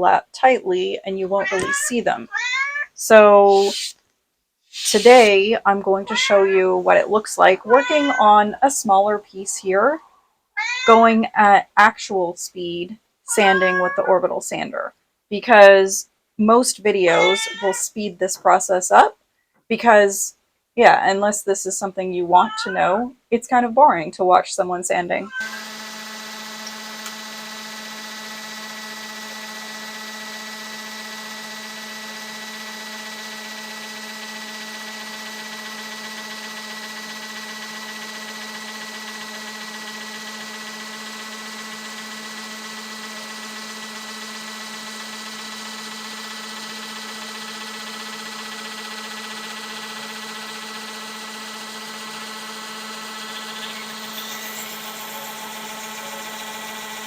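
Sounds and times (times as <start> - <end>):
orbital sander on wood: 25.5 - 57.0.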